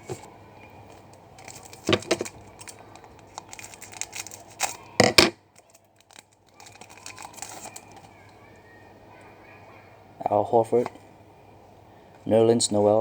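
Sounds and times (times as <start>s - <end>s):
foil wrapper tearing and crinkling: 1.4s - 8.1s.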